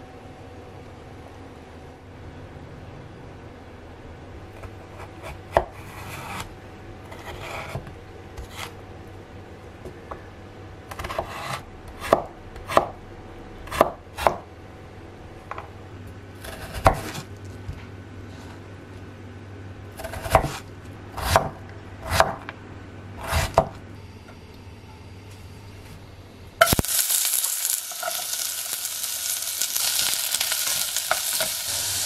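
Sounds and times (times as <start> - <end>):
knife cutting vegetables: 4.6 - 6.5, 8.4 - 8.8, 16.4 - 17.3, 20.0 - 22.4, 23.2 - 23.8.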